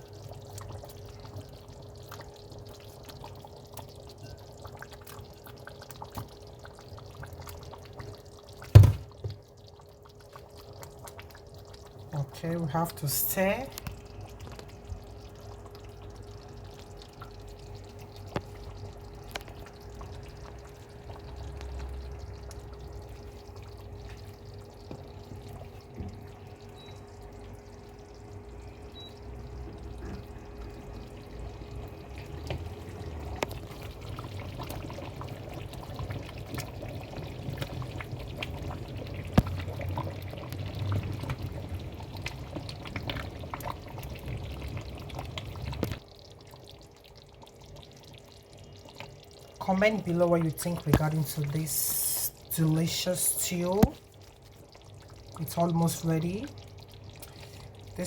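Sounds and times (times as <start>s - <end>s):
stew sloshing in a pot: 28.9s - 46.8s.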